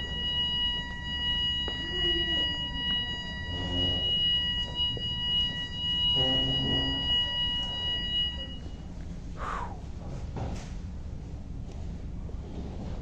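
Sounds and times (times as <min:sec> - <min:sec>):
fire alarm high-pitched tone: 0:00.0 - 0:08.9.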